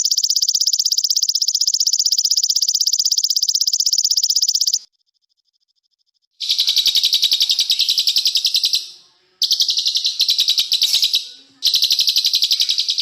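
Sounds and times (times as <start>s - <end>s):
songbird singing fast trills: 6.4s - 13.0s.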